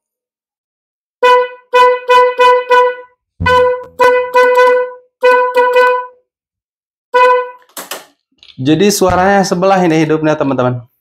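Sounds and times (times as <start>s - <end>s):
horn honking short blasts: 1.2s - 6.2s, 7.1s - 7.7s.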